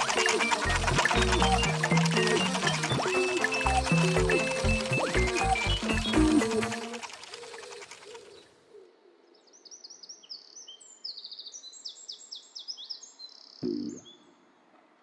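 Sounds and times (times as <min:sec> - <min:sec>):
songbird chirping and trilling: 0:00.0 - 0:06.7, 0:09.3 - 0:14.3
music: 0:00.0 - 0:07.0.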